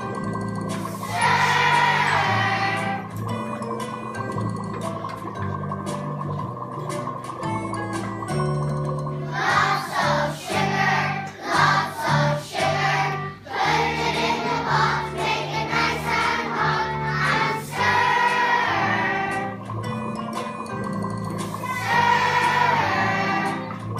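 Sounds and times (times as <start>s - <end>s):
instrumental accompaniment: 0.0s - 23.9s
children's choir singing: 0.8s - 3.2s, 9.2s - 19.8s, 21.4s - 23.9s.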